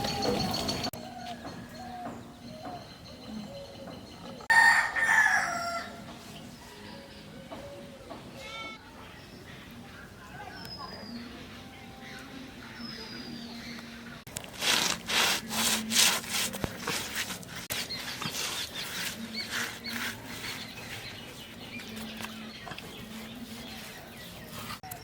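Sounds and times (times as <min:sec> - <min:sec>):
rasping scraping strokes: 0:14.3 - 0:25.0.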